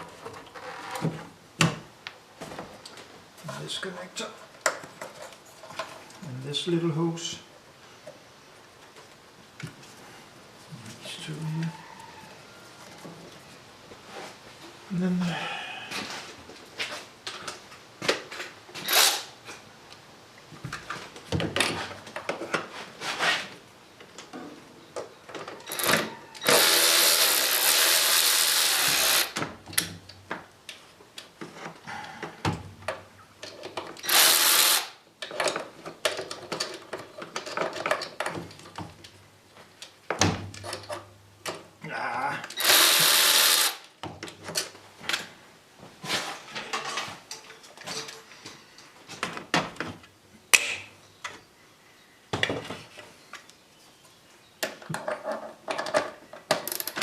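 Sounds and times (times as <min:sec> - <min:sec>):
power drill running: 0:25.7 - 0:29.4, 0:34.0 - 0:34.9, 0:42.6 - 0:43.8
tools clicking and knocking: 0:54.6 - 0:57.0.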